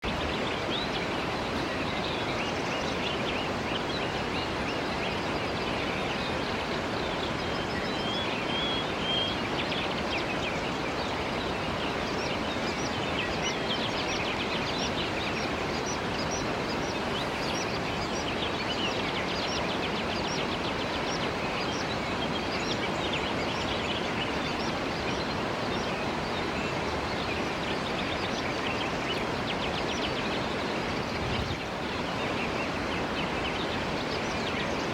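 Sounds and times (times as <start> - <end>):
bird chirps: 28.0 - 34.8
waterfall rushing: 30.4 - 33.1.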